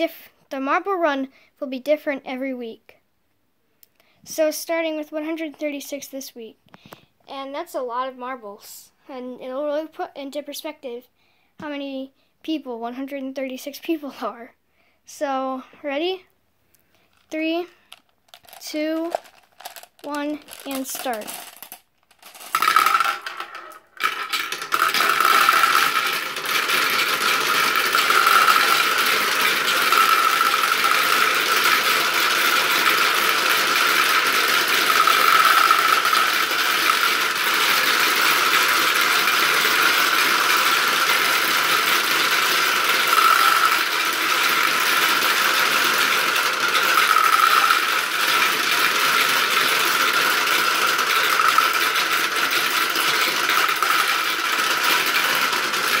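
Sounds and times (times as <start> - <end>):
marbles rattling down a marble run: 17.1 - 56.0.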